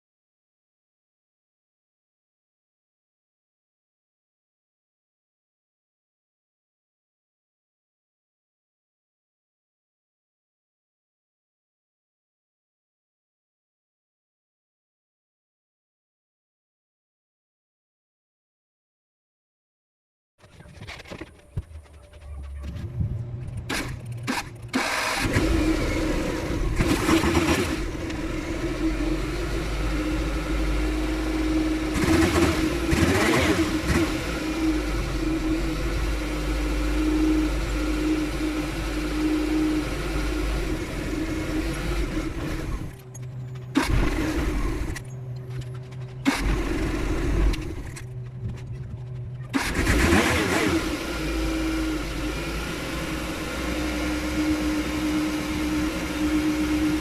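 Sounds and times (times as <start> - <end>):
outboard engine revving: 22.9 - 45.3, 46.2 - 57.0.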